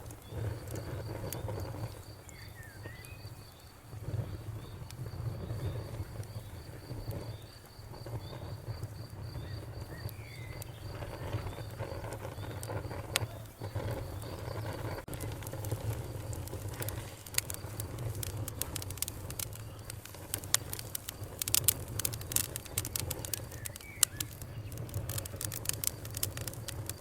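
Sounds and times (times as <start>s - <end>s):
campfire crackling and popping: 0.0s - 27.0s
cricket chirping: 0.1s - 27.0s
low rumble: 7.9s - 27.0s.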